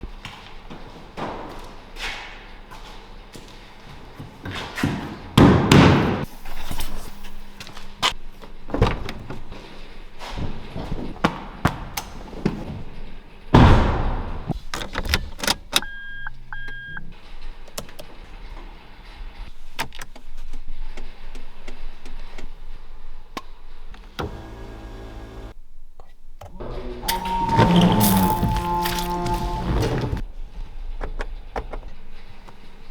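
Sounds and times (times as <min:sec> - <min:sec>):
car door shutting: 0:27.0 - 0:30.2.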